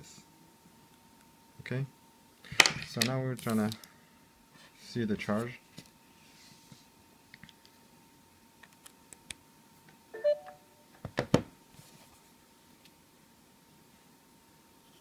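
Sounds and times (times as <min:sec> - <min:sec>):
phone beep: 0:10.2 - 0:10.7.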